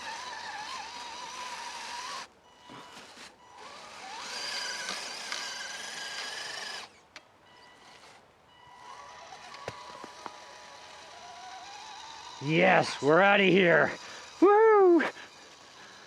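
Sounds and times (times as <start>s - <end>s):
electric motor whining: 0.0s - 16.0s.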